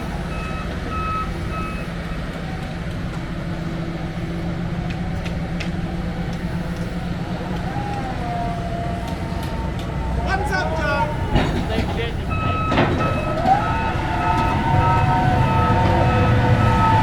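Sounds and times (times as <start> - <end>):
reversing alarm beeping: 0.0 - 3.0, 6.4 - 17.0
heavy machine engine rumbling: 0.0 - 17.0.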